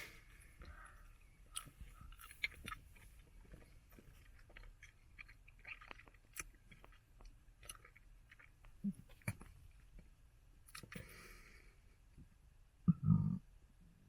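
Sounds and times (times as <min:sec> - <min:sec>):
bubble gum chewing: 0:03.5 - 0:09.5.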